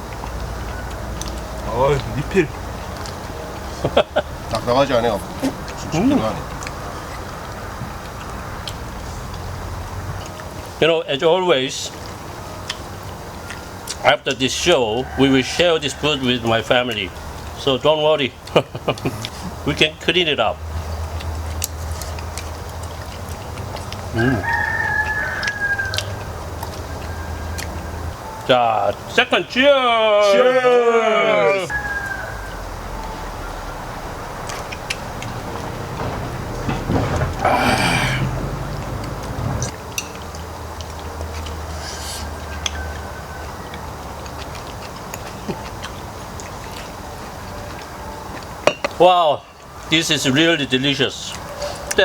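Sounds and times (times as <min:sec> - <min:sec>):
rooster crowing: 0:14.5 - 0:17.3, 0:24.1 - 0:28.2, 0:30.1 - 0:33.8, 0:37.4 - 0:39.7, 0:41.9 - 0:44.0.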